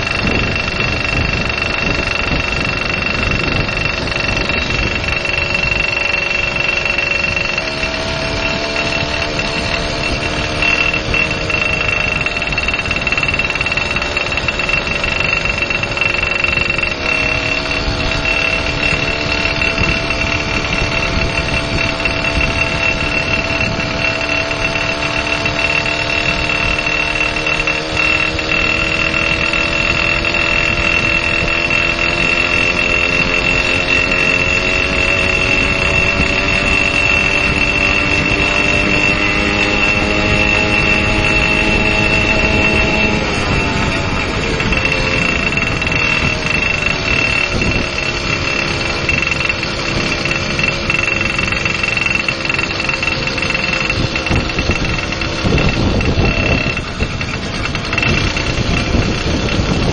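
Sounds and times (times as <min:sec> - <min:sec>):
high-pitched whine: 0:00.0 - 0:59.9
motorcycle engine running: 0:00.0 - 0:59.9.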